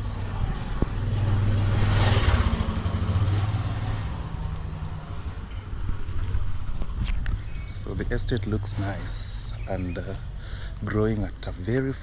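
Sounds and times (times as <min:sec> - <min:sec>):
vehicle passing by: 0:00.0 - 0:06.7.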